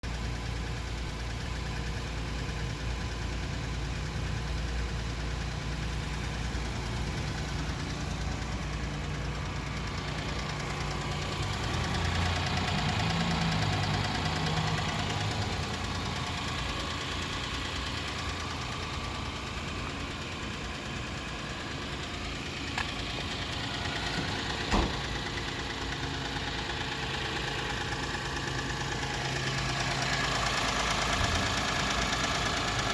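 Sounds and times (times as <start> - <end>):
diesel car engine knocking: 0.0 - 32.9.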